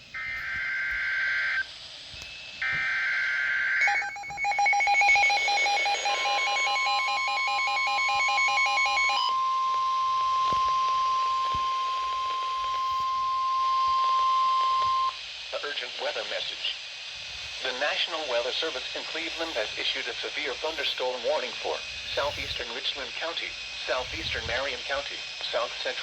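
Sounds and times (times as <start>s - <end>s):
steady warning alarm tone: 0.1s - 26.0s
rapid pulsing electronic alert: 3.8s - 9.4s, 17.4s - 25.0s.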